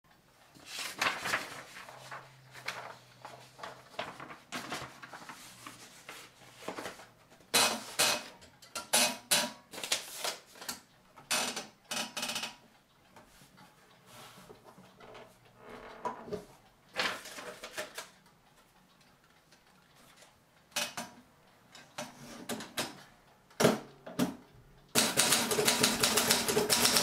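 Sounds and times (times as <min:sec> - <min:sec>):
typewriter clacking: 0:24.9 - 0:27.0.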